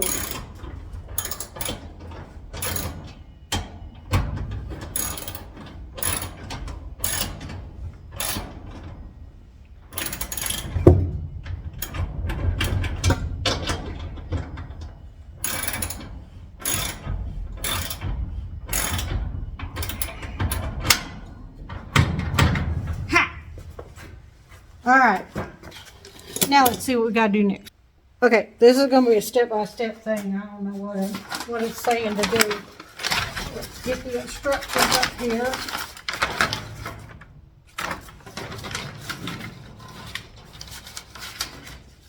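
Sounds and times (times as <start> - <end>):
ratcheting clicks: 0.0 - 3.2, 4.9 - 7.6, 9.9 - 11.0, 15.4 - 18.1, 18.7 - 21.2.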